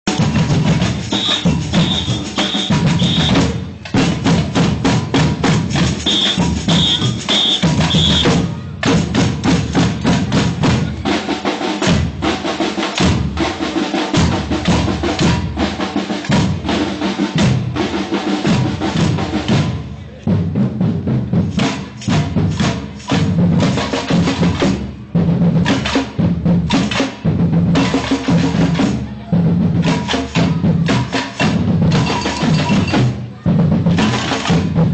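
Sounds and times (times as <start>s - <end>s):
percussion band drumming: 0.0s - 34.9s
whistle blasts: 1.0s - 3.6s, 6.0s - 8.5s.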